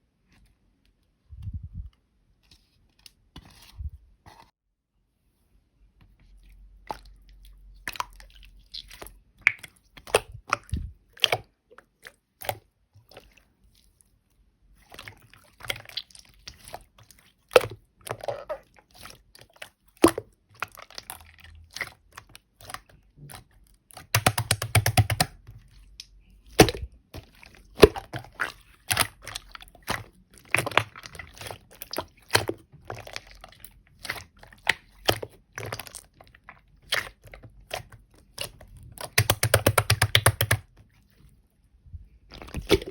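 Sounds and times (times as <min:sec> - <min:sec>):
sticky slime pops and clicks: 0:24.2 - 0:25.4, 0:39.0 - 0:40.6.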